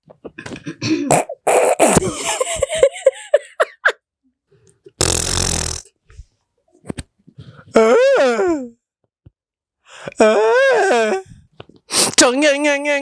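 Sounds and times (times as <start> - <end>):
people making silly vocal sounds: 5.0 - 5.8
fart-like blast: 5.0 - 5.9.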